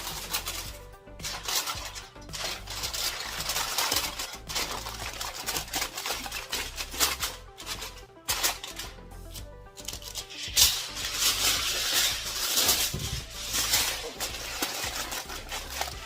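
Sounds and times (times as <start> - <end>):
aluminium foil crinkling: 0.0 - 16.0
background music: 0.0 - 16.0.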